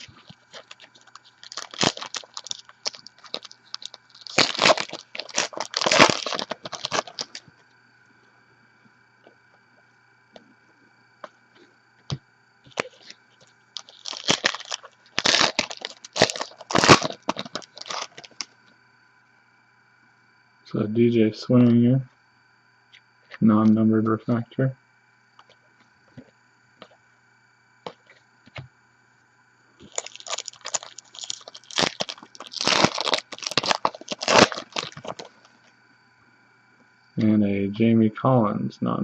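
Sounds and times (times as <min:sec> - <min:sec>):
foil wrapper crinkling: 0:00.0 - 0:07.5, 0:12.7 - 0:13.2, 0:13.8 - 0:18.5, 0:29.8 - 0:35.6.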